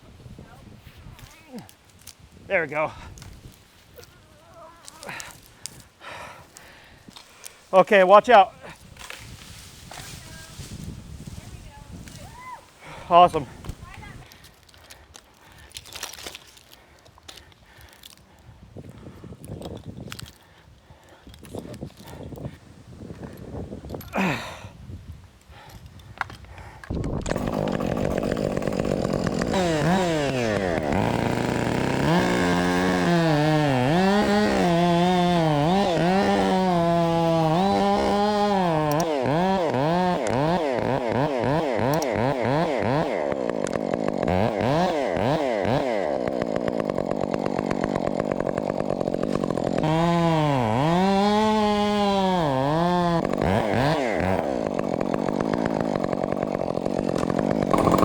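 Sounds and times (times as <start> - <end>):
chainsaw cutting wood: 4.8 - 18.2, 26.3 - 58.0.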